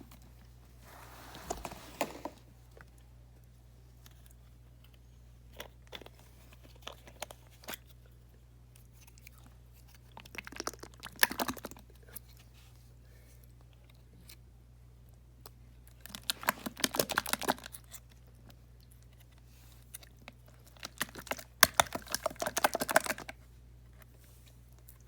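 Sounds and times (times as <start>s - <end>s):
packaging crinkling: 16.0s - 17.8s, 20.6s - 23.4s.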